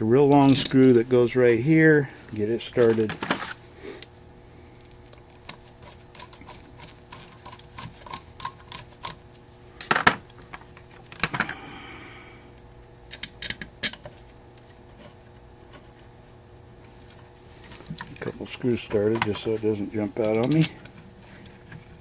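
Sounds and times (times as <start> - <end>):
small metal clicks of screws: 20.2 - 21.0.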